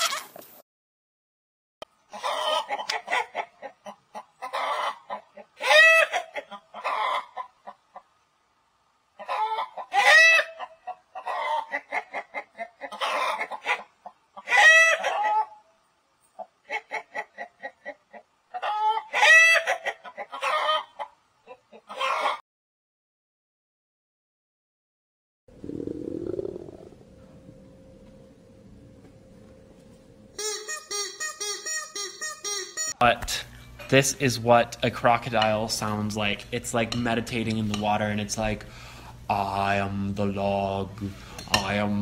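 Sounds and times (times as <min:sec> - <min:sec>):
chicken drawn-out call: 0:00.0 - 0:00.4, 0:02.1 - 0:08.1, 0:09.2 - 0:15.7, 0:16.4 - 0:22.4, 0:25.6 - 0:27.1
chickens clucking: 0:02.0 - 0:08.2, 0:09.2 - 0:15.7, 0:16.4 - 0:22.4, 0:25.6 - 0:27.0.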